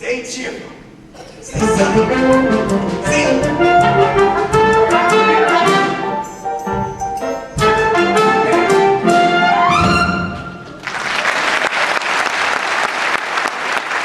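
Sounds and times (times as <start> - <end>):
brass-led show tune: 0.6 - 11.0
audience applause: 10.7 - 14.0.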